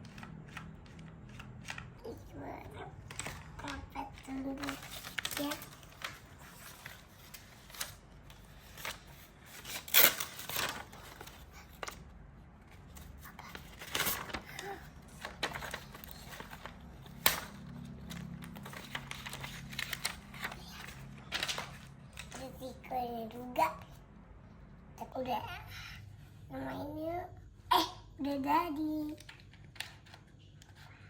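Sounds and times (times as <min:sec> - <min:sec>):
packaging rustling: 0:03.0 - 0:12.0, 0:12.9 - 0:22.4.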